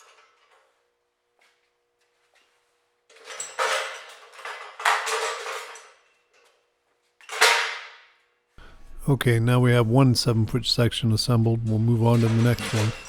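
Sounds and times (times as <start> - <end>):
metal parts clinking: 3.1 - 6.5, 12.0 - 13.0
faint steady hum: 8.6 - 13.0.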